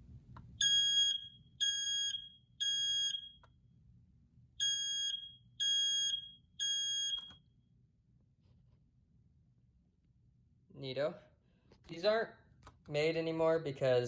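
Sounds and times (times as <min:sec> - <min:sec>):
smoke alarm beeps: 0:00.6 - 0:03.5, 0:04.6 - 0:07.6.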